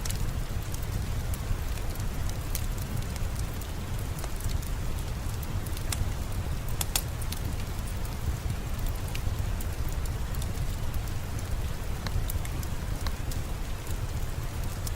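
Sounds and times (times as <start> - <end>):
rain falling: 0.0 - 14.9
wood fire crackling: 0.0 - 14.9.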